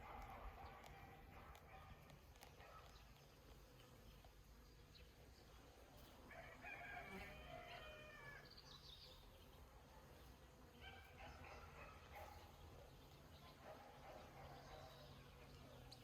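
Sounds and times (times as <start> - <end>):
rooster crowing: 6.3 - 8.5.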